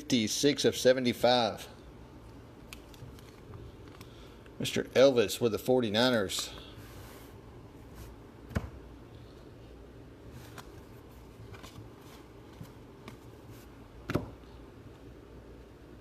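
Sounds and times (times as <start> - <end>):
cards sliding and clicking: 10.3 - 13.7.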